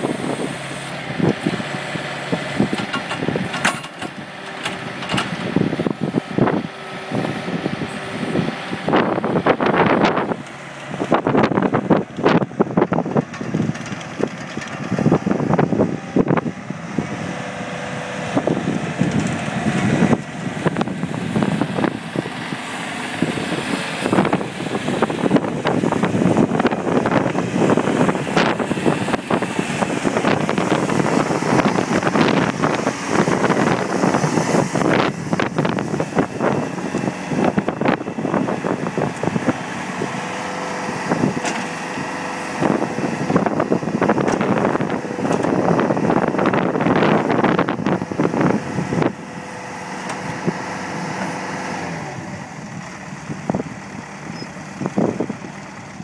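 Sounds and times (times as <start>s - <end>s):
diesel loader engine running: 0.0s - 56.0s
clanks and rattles: 2.7s - 5.4s.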